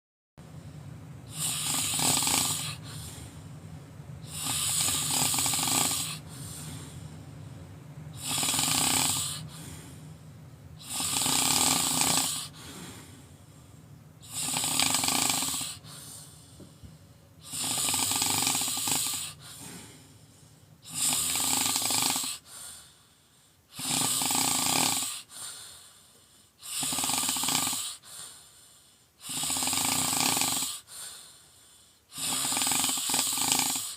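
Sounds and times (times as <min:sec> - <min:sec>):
person snoring loudly: 0:01.3 - 0:03.3, 0:04.2 - 0:07.0, 0:08.1 - 0:10.0, 0:10.8 - 0:13.2, 0:14.2 - 0:16.4, 0:17.4 - 0:20.2, 0:20.8 - 0:22.8, 0:23.7 - 0:25.4, 0:26.6 - 0:28.3, 0:29.2 - 0:31.1, 0:32.1 - 0:33.9.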